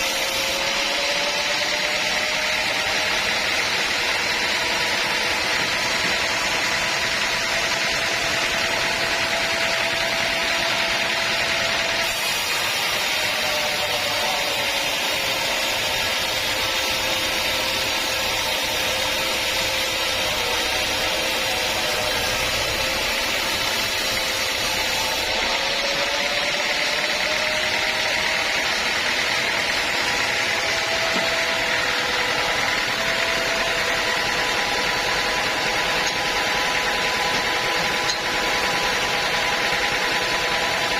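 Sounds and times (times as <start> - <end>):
sawmill sawing a log: 0.0 - 40.9
high hiss from saw blade: 12.0 - 25.6.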